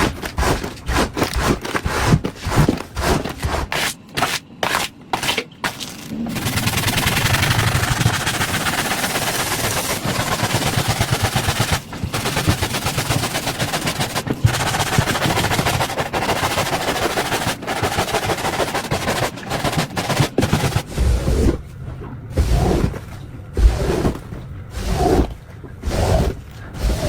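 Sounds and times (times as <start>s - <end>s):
rug being scrubbed: 6.4s - 21.5s, 23.6s - 27.0s.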